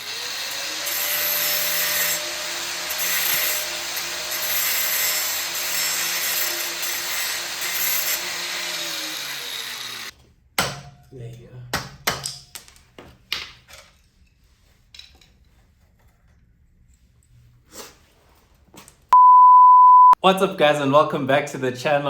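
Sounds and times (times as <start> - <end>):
angle grinder cutting metal: 0.0 - 10.1.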